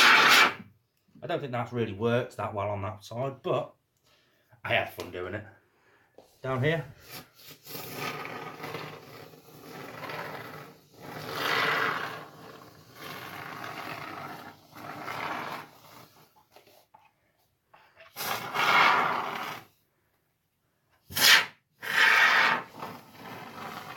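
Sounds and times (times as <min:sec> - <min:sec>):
expanding foam can spraying: 0:00.0 - 0:00.6, 0:07.0 - 0:16.3, 0:18.1 - 0:19.8, 0:21.0 - 0:23.9.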